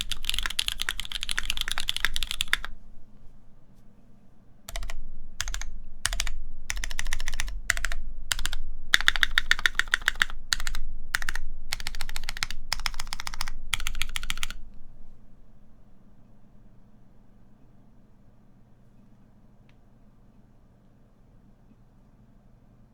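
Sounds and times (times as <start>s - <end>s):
mechanical keyboard typing: 0.0s - 2.8s, 4.7s - 14.7s.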